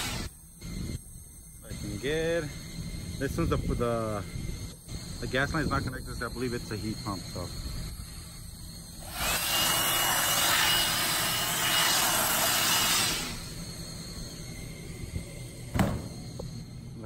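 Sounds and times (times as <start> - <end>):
faint high whine: 0.0 - 17.0.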